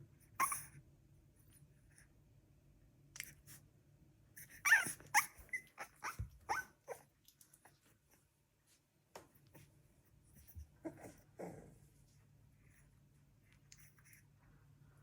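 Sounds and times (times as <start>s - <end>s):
puppy squeaking and yelping: 0.3s - 0.8s, 4.4s - 7.1s.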